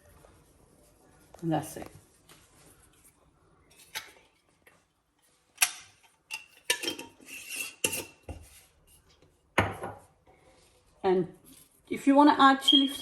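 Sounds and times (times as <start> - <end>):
kitchen utensils clinking and knocking: 5.6 - 8.5.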